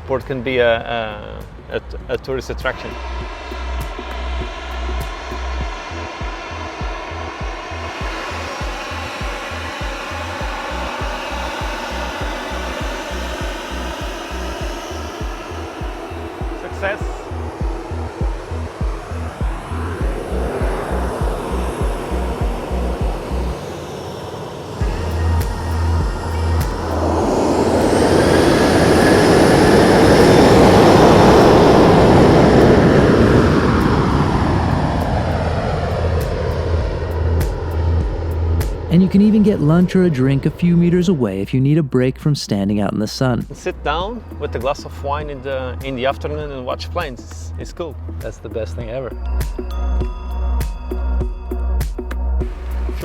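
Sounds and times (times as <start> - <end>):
music with beat and bass: 2.0 - 23.6, 24.8 - 28.2, 36.2 - 53.0
jet engines roaring: 2.8 - 41.4.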